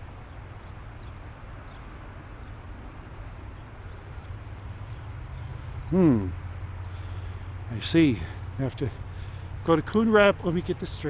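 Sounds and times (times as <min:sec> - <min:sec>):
faint bird chirps: 0:03.6 - 0:07.3.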